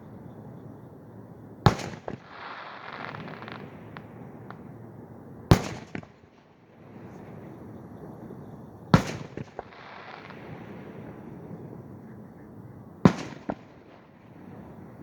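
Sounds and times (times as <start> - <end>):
fireworks booming: 1.7 - 4.8, 13.1 - 15.0
small fireworks pops: 1.7 - 4.8, 5.5 - 7.4, 9.0 - 11.2, 13.1 - 14.1.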